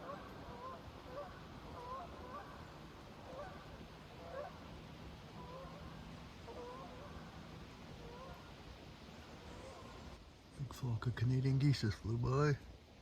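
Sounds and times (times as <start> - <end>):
geese honking: 0.0 - 2.6, 3.2 - 4.6, 5.4 - 7.4, 8.0 - 8.5.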